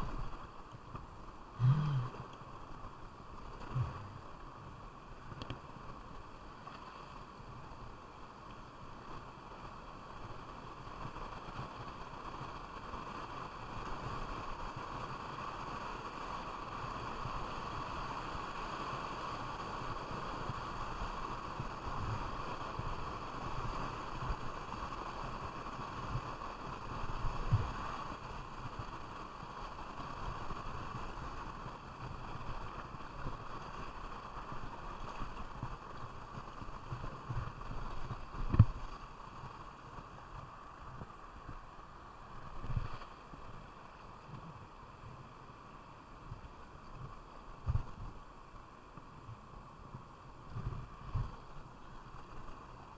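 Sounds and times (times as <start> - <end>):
river water rushing: 0.0 - 52.9.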